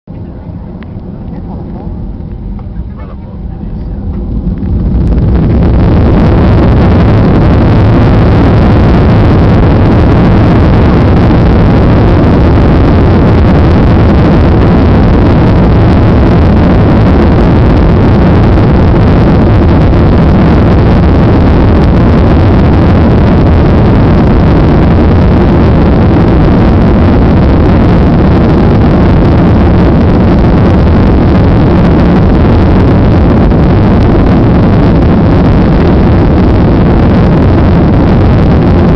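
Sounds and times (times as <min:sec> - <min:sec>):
jet engines at takeoff power: 0:00.1 - 0:38.9.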